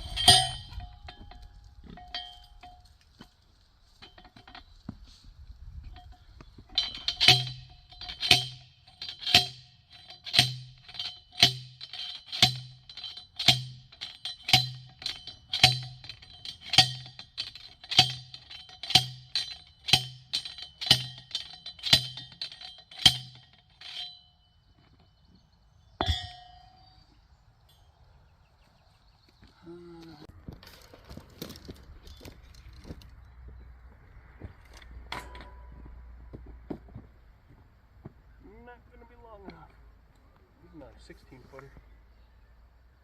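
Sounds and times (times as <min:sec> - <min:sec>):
hammering on metal: 0:06.8 - 0:24.2
single metal clank: 0:26.0 - 0:26.9, 0:34.7 - 0:36.0.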